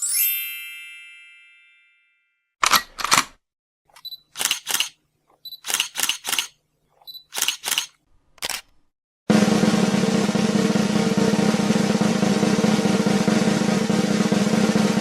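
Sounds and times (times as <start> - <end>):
camera shutter clicking: 4.0 - 5.0, 5.6 - 6.6, 7.3 - 8.7.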